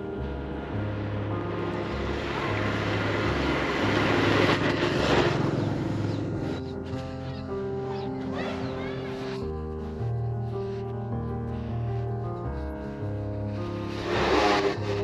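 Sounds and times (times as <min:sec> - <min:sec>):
background music with bass line: 0:00.0 - 0:15.0
rushing noise: 0:00.2 - 0:06.7, 0:13.5 - 0:15.0.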